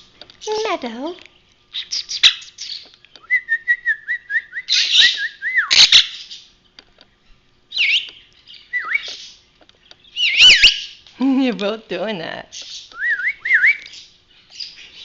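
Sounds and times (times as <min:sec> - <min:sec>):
parakeets chirping and whistling: 0:01.7 - 0:03.4, 0:04.1 - 0:06.5, 0:07.7 - 0:09.4, 0:10.0 - 0:11.0, 0:12.5 - 0:15.0.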